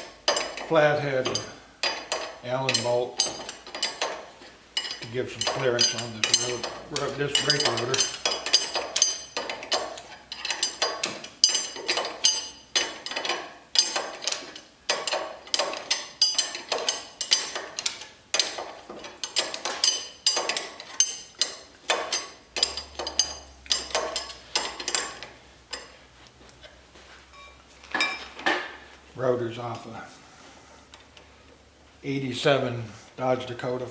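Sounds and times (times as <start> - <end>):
metal tools clinking: 0.0 - 28.8.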